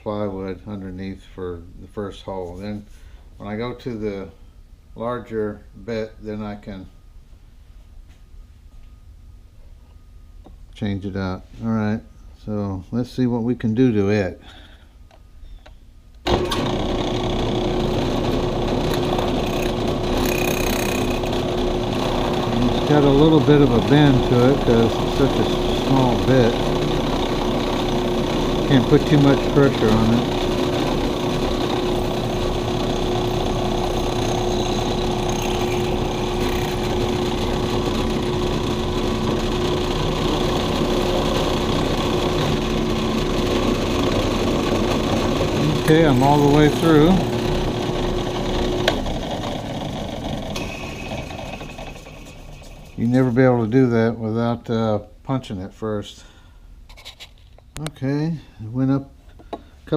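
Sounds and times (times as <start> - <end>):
drill press motor humming: 16.2 - 53.3.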